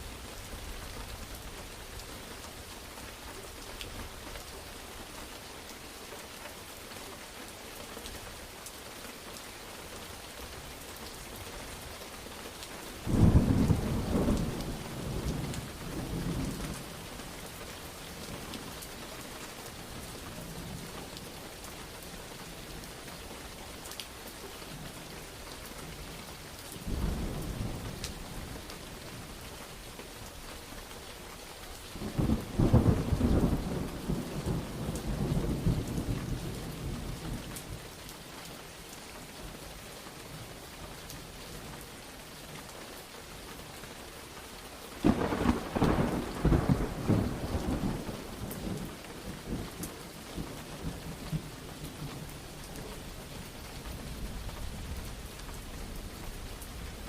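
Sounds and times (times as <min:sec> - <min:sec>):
steady rain falling: 0:00.0 - 0:57.0
thunder rolling: 0:45.0 - 0:48.3.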